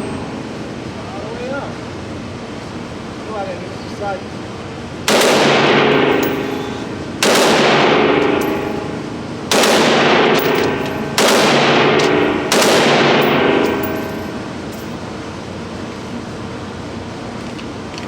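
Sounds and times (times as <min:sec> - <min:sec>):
rifle shots ringing: 0:05.1 - 0:15.0.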